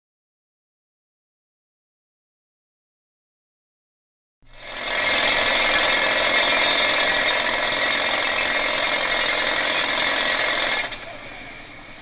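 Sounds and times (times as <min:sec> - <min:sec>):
machine running steadily: 0:04.5 - 0:12.0.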